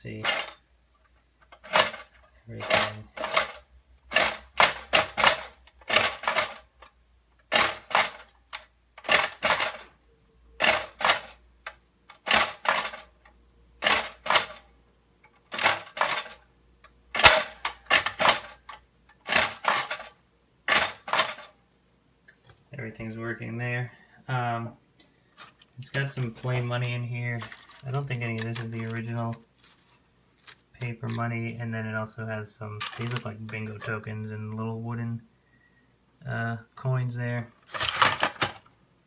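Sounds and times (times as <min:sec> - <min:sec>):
toy cash register metal clacks: 0:00.0 - 0:00.6, 0:01.4 - 0:09.9, 0:10.6 - 0:14.7, 0:15.5 - 0:16.4, 0:17.1 - 0:21.6, 0:26.0 - 0:29.4, 0:32.8 - 0:33.9, 0:37.7 - 0:38.7.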